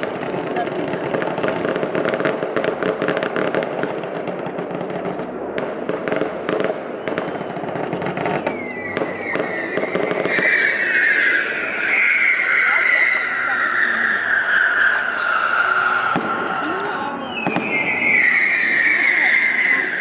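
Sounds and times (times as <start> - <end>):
fireworks crackling bangs: 0.0 - 20.0
high whistling: 7.8 - 20.0.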